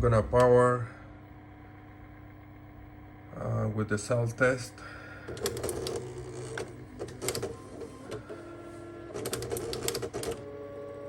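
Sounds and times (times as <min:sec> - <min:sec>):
printer motor whine: 0:00.0 - 0:11.0
print mechanism clicks: 0:05.3 - 0:10.6.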